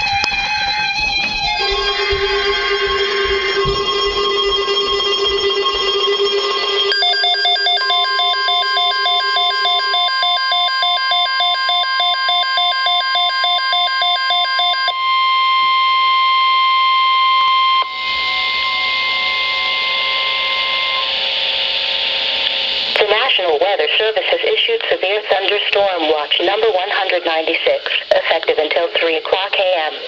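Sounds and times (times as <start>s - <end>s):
steady single-pitch alert tone: 1.6s - 22.8s
pulsing alarm beep: 1.6s - 22.9s
radio hiss: 17.9s - 30.0s.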